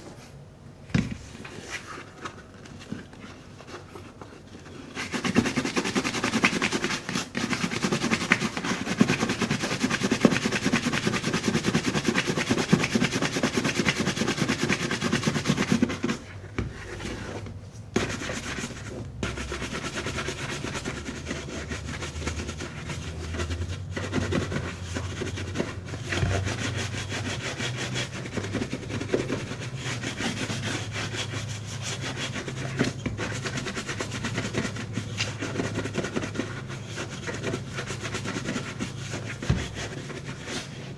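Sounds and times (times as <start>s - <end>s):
brush buffing leather boot: 19.4s - 40.9s.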